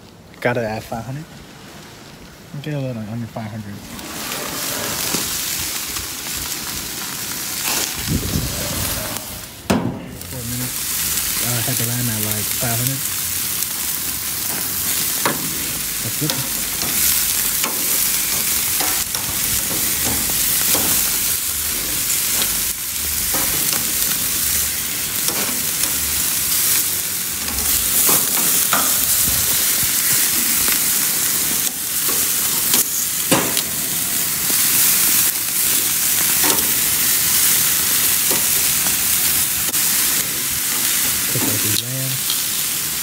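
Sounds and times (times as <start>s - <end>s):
meat sizzling on a grill: 0.4s - 43.0s.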